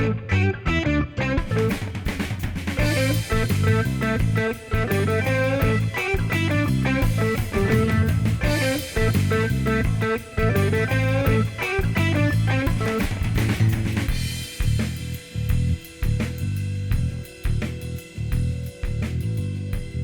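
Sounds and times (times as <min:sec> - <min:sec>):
rock music: 0:00.0 - 0:20.0.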